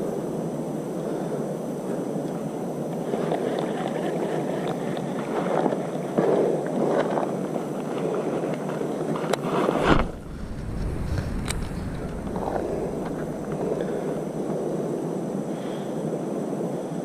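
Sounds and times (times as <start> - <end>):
wind buffeting microphone: 9.4 - 15.5.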